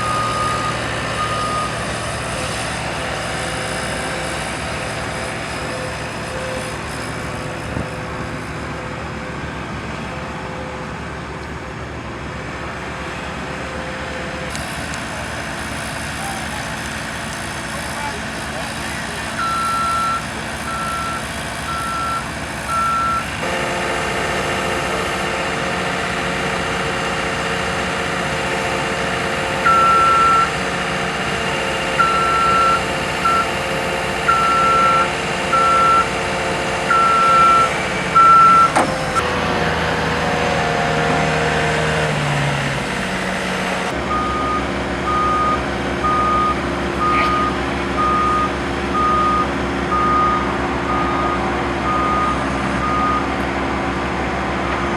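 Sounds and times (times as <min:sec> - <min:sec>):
reversing alarm beeping: 0:00.0 - 0:06.8, 0:19.2 - 0:25.3, 0:28.4 - 0:30.6, 0:31.4 - 0:39.2, 0:44.1 - 0:53.3
skid steer engine running: 0:00.0 - 0:54.9
lower-pitched backup alarm beeping: 0:19.4 - 0:23.4, 0:28.5 - 0:30.6, 0:31.5 - 0:33.6, 0:34.2 - 0:36.2, 0:36.8 - 0:38.8, 0:44.1 - 0:53.3.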